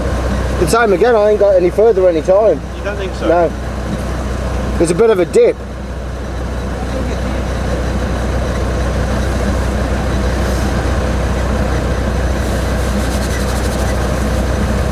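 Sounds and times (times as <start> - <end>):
diesel engine running: 0.0 - 14.9
constant rushing noise: 6.8 - 14.9.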